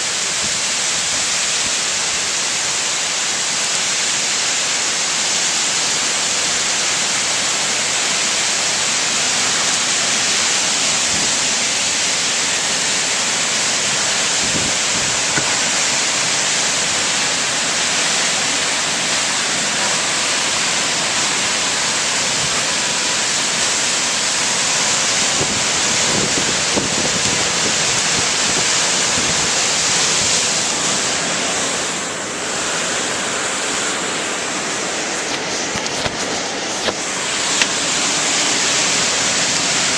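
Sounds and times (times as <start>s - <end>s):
torrential rain: 0.0s - 39.9s
strong wind gusts: 6.3s - 39.9s.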